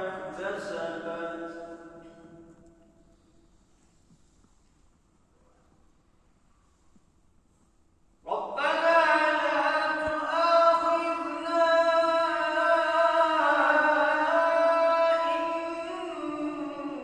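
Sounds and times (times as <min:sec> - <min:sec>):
person chanting melodic recitation: 0:00.0 - 0:02.8, 0:08.3 - 0:17.0.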